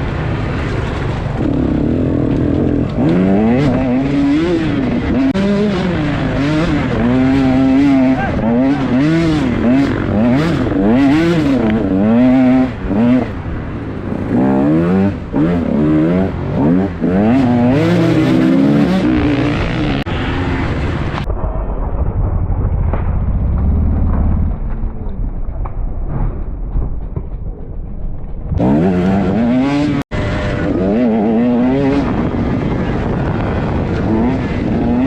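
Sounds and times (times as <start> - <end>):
dirt bike engine revving: 0.4 - 21.2, 28.6 - 35.0
dull low rumble: 19.5 - 28.9.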